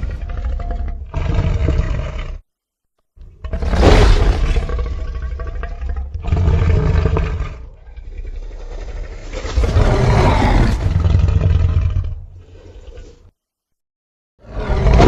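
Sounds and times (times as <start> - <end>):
deep rumbling monster roars: 3.4 - 12.3, 14.4 - 15.0.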